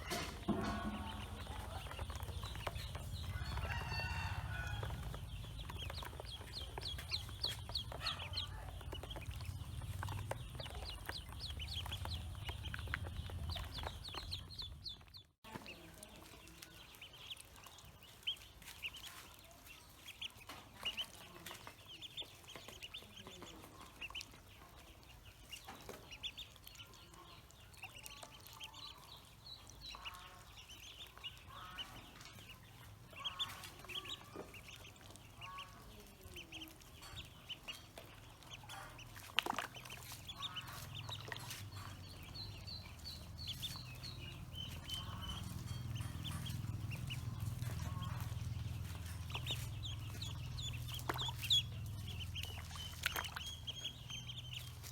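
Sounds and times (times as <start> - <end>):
ducklings peeping: 0.0 - 54.9
low rumble: 40.3 - 54.8.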